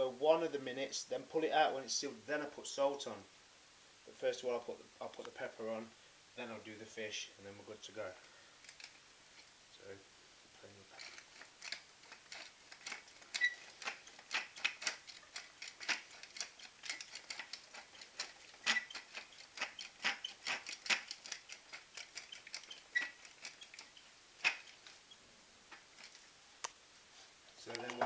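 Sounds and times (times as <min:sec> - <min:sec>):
pepper mill grinding: 0:11.0 - 0:26.2.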